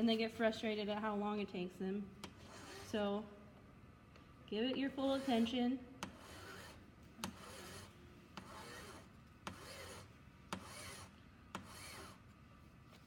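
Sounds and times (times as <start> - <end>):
hand file rasping on metal: 2.4 - 3.0, 5.1 - 12.2.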